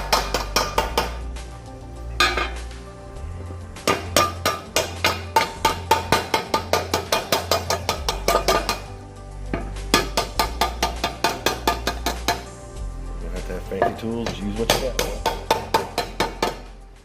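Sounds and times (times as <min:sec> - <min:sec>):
hammer striking sheet metal: 0:00.0 - 0:01.3, 0:02.2 - 0:02.6, 0:03.8 - 0:08.9, 0:09.5 - 0:12.5, 0:13.8 - 0:16.7
background music with bass: 0:00.0 - 0:17.0.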